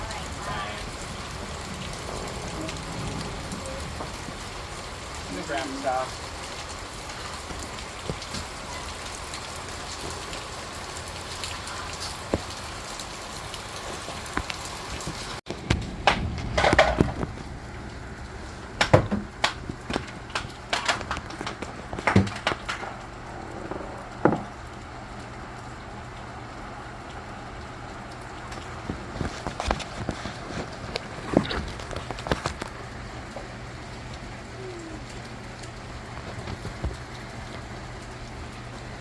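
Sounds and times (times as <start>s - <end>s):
heavy rain hissing: 0.0s - 39.0s
sharp knocks and clattering thumps: 15.5s - 17.4s, 18.8s - 23.0s.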